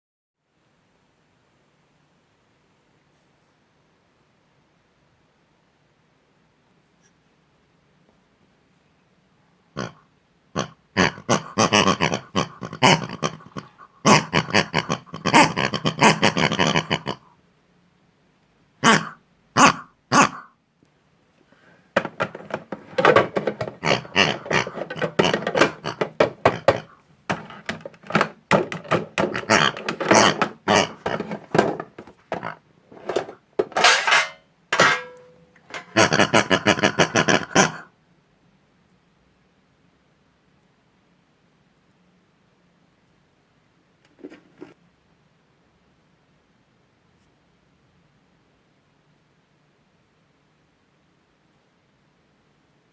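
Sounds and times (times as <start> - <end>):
character oinking and grunting: 9.8 - 10.0, 10.6 - 17.2, 18.8 - 20.5, 23.0 - 34.2, 35.7 - 37.9.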